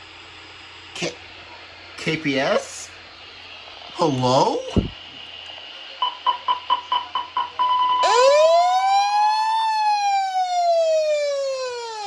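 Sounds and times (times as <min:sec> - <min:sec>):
held steady tone: 0:08.0 - 0:12.0
siren wail rising in pitch: 0:08.0 - 0:12.0.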